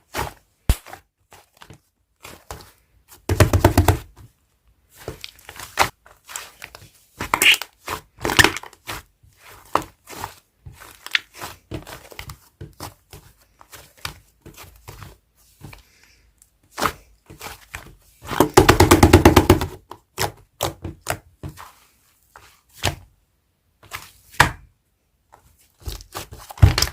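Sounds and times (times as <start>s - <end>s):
slime squishing and crackling: 4.9s - 15.8s, 25.6s - 26.9s.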